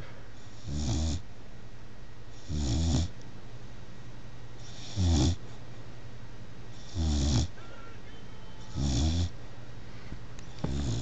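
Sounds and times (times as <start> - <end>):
puppy snoring: 0.4 - 1.3, 2.3 - 3.2, 4.6 - 5.4, 6.7 - 7.6, 8.7 - 9.4, 10.5 - 11.0.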